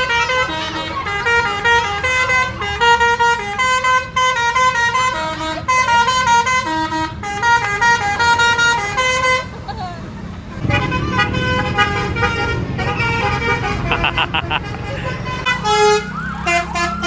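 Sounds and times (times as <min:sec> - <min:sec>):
musical air horn playing a tune: 0:10.6 - 0:17.0.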